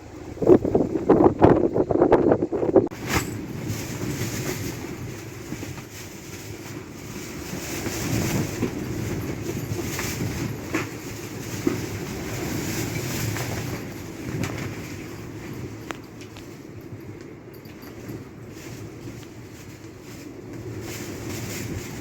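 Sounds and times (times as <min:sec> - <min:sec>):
wind and rain rushing: 0:00.0 - 0:22.0.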